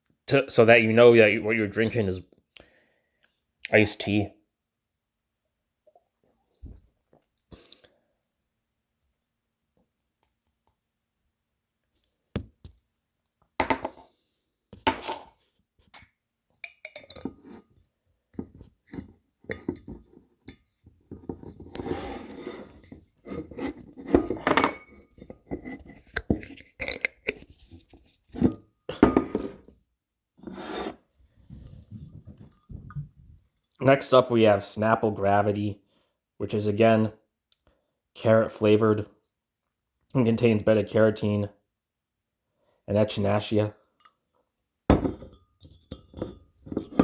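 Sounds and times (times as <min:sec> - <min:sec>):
glass bottles knocking and clinking: 0:13.6 - 0:14.0, 0:16.0 - 0:17.6, 0:24.2 - 0:25.4, 0:26.2 - 0:27.4, 0:28.9 - 0:29.6, 0:44.9 - 0:47.0
bottles scraping on tabletop: 0:21.1 - 0:29.7, 0:30.4 - 0:31.1, 0:46.0 - 0:47.0.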